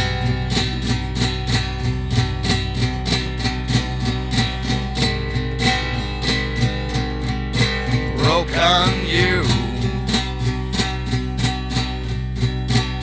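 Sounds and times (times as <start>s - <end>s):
guitar strummed: 0.0s - 13.0s
low bass: 7.8s - 10.9s.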